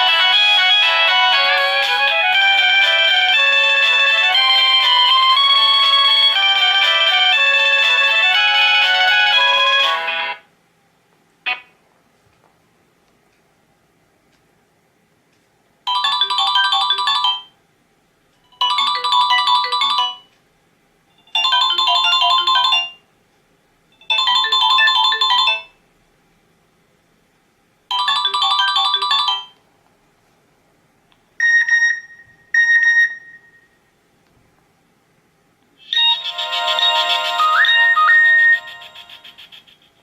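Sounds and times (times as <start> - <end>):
bright musical ringtone: 0.0 - 10.4, 15.9 - 17.5, 18.5 - 20.3, 21.2 - 23.0, 24.0 - 25.7, 27.9 - 29.6, 35.8 - 39.8.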